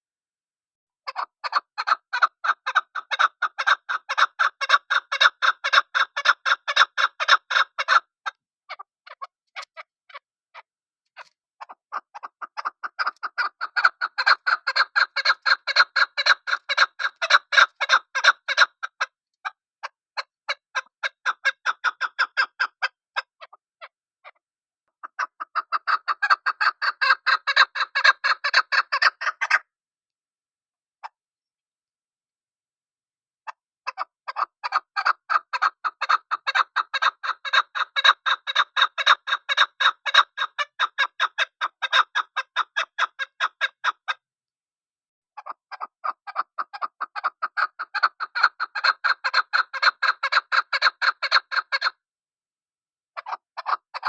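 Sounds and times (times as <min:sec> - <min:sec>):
partridge calling: 0:01.1 - 0:10.2, 0:11.2 - 0:19.6, 0:20.2 - 0:23.6, 0:25.0 - 0:29.6, 0:33.5 - 0:44.2, 0:45.4 - 0:51.9.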